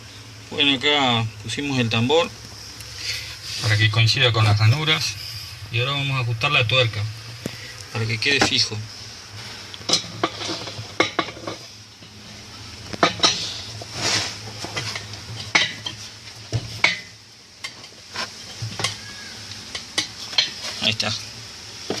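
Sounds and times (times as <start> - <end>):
metal tool clinking and scraping: 13.0 - 13.6.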